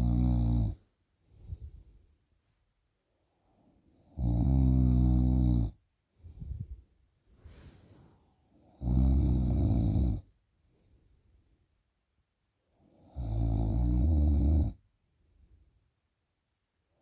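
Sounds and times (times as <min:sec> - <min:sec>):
soft breaths: 0:00.0 - 0:04.0, 0:06.1 - 0:12.0, 0:15.1 - 0:16.2
person snoring loudly: 0:04.2 - 0:05.7, 0:08.8 - 0:10.2.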